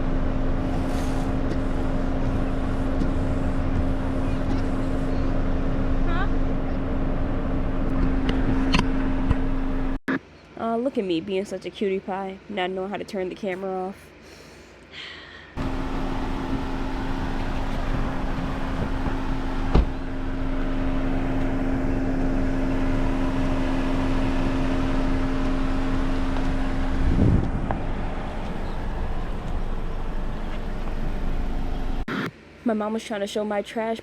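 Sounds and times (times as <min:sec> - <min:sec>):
car engine rumbling: 0:00.0 - 0:10.0, 0:15.6 - 0:32.1.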